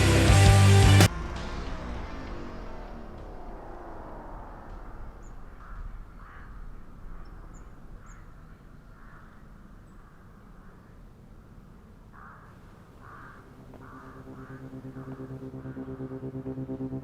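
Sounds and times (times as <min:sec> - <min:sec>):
low steady rumble: 0:00.0 - 0:11.4, 0:13.4 - 0:17.0
crows cawing: 0:04.8 - 0:11.0, 0:12.0 - 0:16.9.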